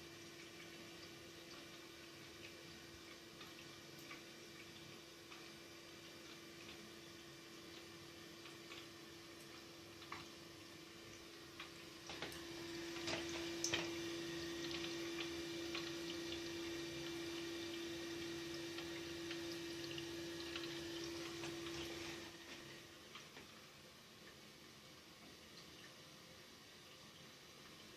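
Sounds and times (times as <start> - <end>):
toilet cistern refilling: 0.0 - 22.9
fill valve hum: 0.0 - 27.9.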